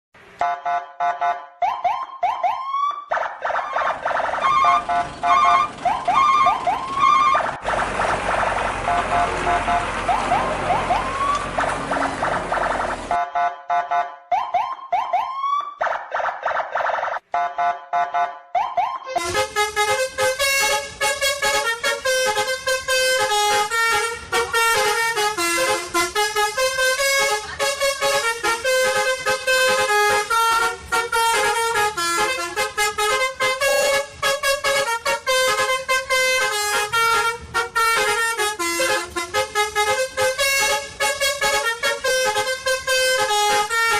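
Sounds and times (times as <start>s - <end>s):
fast tune of horn-like notes: 4.5s - 5.7s, 19.1s - 43.9s
repeated beeps: 11.9s - 14.2s.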